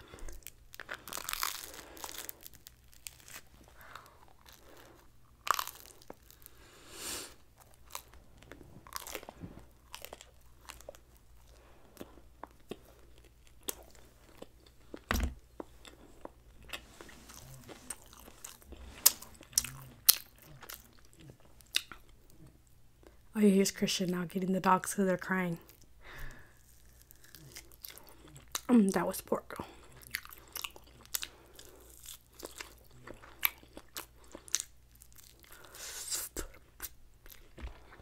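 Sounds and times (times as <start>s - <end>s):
wet mouth clicks and crunches: 0.0s - 6.6s
person biting and chewing meat: 0.0s - 23.2s, 25.7s - 28.7s, 29.7s - 38.0s.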